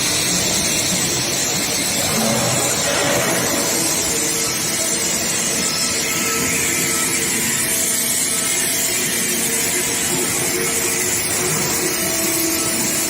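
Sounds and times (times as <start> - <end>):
machine hissing: 1.4 - 7.1.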